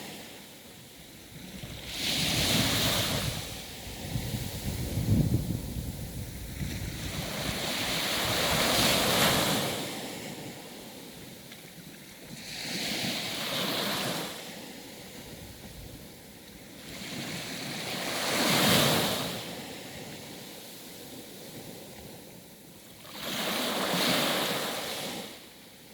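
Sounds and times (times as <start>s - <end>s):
sea waves breaking on shore: 0.0s - 25.9s
wind on microphone: 1.0s - 11.4s, 12.2s - 22.4s.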